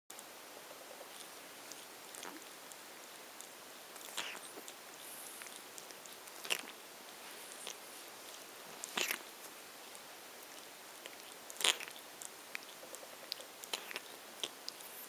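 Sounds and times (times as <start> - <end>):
cat licking and nibbling fur: 0.5 - 15.0
sharp loud nibbles: 4.0 - 6.8.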